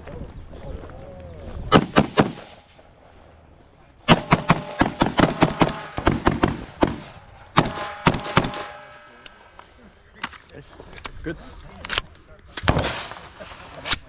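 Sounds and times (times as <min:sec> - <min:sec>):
semi-automatic gunfire: 0:01.7 - 0:02.6, 0:04.1 - 0:09.0.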